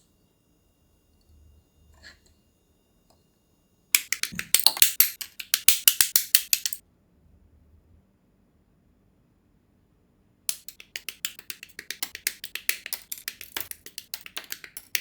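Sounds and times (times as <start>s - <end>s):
sharp plastic clicks: 4.0s - 6.8s, 10.5s - 15.0s.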